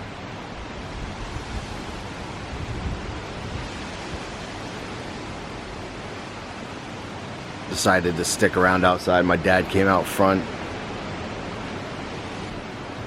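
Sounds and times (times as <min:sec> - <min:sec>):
strong wind rushing: 0:00.0 - 0:08.3
wind buffeting microphone: 0:00.0 - 0:13.0.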